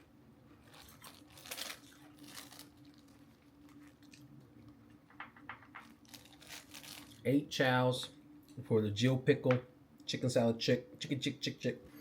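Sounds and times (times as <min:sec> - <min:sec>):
chewing crackers crunching: 0:00.7 - 0:04.5, 0:05.8 - 0:07.2.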